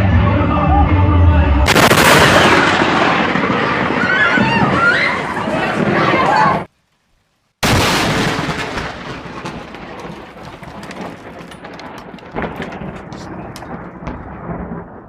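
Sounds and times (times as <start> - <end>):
thunder crack and rumble: 1.6 - 6.7, 7.6 - 15.0.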